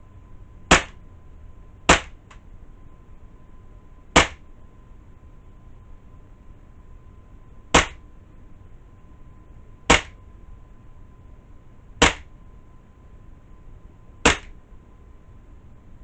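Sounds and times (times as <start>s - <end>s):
faint high hum: 0.0s - 16.0s
bb pistol shots cracking: 0.7s - 1.0s, 1.9s - 2.2s, 4.2s - 4.4s, 7.8s - 8.0s, 9.9s - 10.2s, 12.0s - 12.3s, 14.3s - 14.5s.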